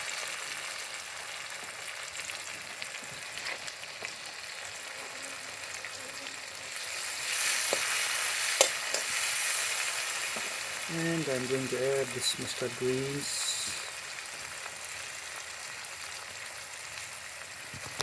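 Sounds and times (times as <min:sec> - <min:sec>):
food sizzling in hot oil: 0:00.0 - 0:18.0
utensil clicking against pan: 0:07.6 - 0:09.2.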